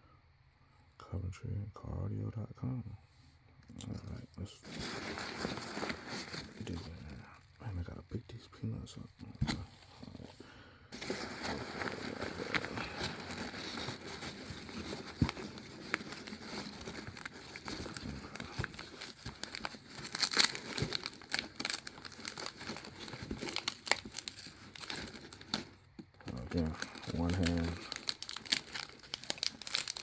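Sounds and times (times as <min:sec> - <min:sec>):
packing material rustling and crackling: 0:04.6 - 0:07.6, 0:09.4 - 0:30.0.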